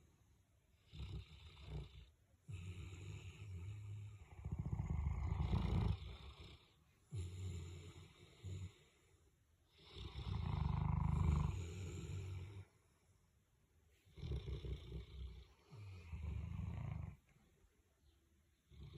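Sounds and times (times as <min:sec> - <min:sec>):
dog snoring: 0:00.8 - 0:09.1, 0:09.7 - 0:12.8, 0:14.1 - 0:17.3, 0:18.7 - 0:18.9.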